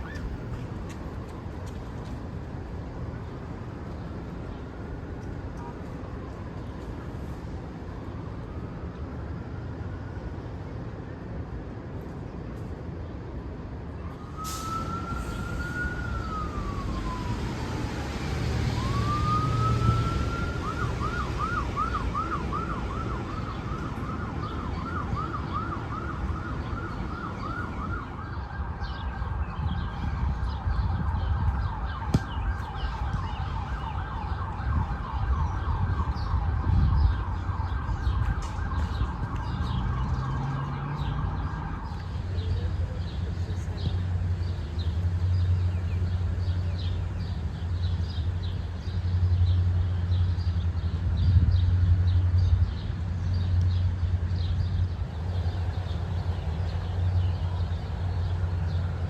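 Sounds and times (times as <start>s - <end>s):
traffic rumble: 0.0s - 59.0s
emergency vehicle siren: 3.8s - 11.3s, 13.8s - 43.8s, 54.9s - 59.0s.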